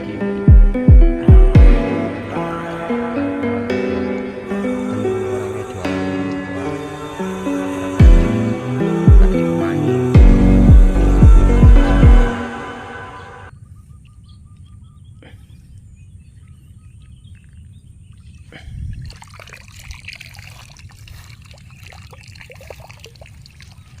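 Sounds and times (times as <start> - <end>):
faint bird calls: 13.5 - 18.9
water trickling and splashing: 15.8 - 24.0.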